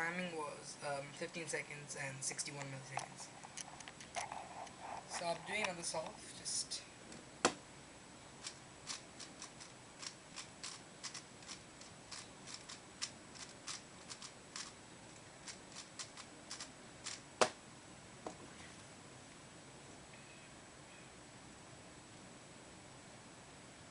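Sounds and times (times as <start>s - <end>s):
puzzle cube clicking turns: 8.4s - 14.8s, 15.4s - 17.2s.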